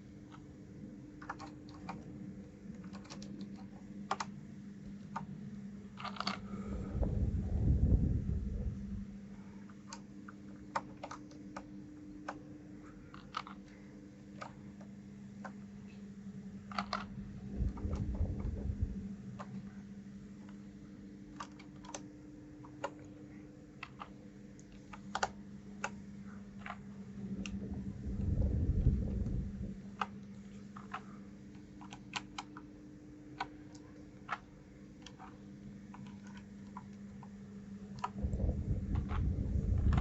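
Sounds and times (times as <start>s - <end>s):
low steady hum: 0.0s - 40.0s
low rumble: 6.4s - 9.4s, 17.1s - 19.4s, 27.2s - 30.0s, 38.2s - 40.0s.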